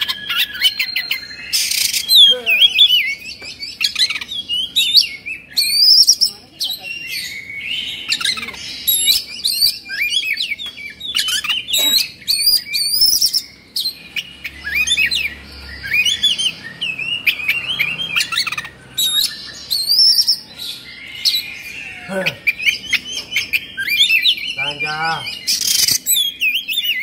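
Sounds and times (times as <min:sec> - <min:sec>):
bird singing varied whistles: 0:00.0 - 0:21.6.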